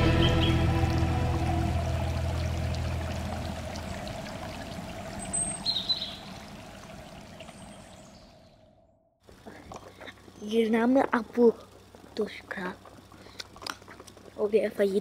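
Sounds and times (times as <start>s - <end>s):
held musical tone: 0.0s - 3.9s
stream water rushing: 0.0s - 8.0s.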